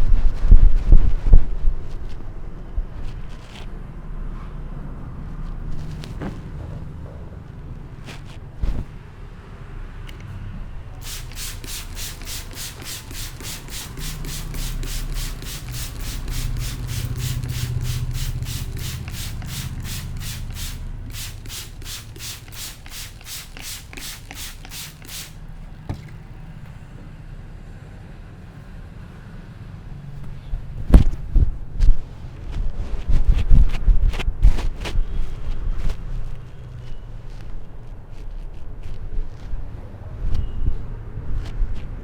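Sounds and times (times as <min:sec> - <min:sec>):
hands rubbing hair and scalp: 0:11.0 - 0:26.4.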